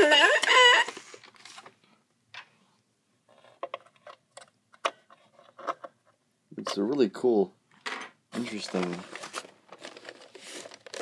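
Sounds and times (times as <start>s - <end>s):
person speaking: 8.3s - 9.2s.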